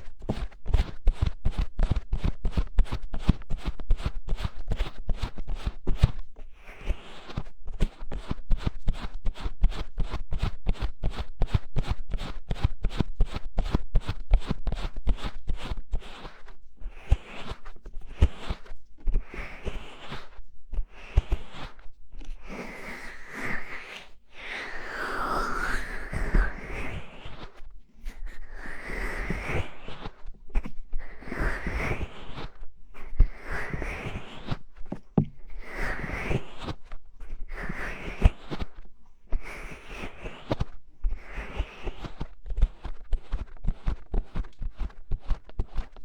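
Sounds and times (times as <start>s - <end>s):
hands patting microphone: 21.0s - 38.7s.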